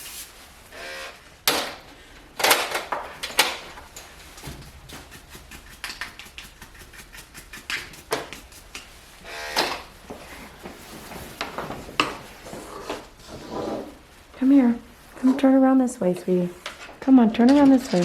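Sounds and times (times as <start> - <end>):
grooming tools knocking and clicking: 4.5 - 8.9.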